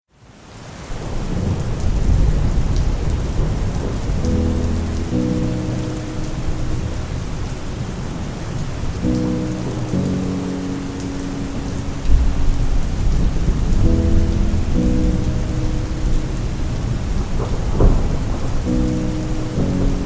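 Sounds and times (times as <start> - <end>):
heavy rain: 0.1 - 20.0
thunder rumble: 1.0 - 20.0
soft lo-fi chords: 4.2 - 20.0.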